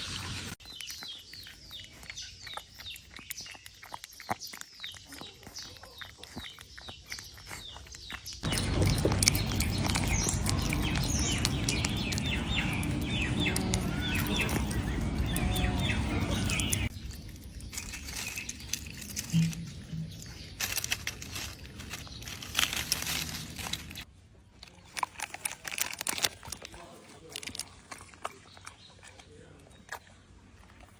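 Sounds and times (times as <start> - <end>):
birds chirping: 0.0 - 24.1.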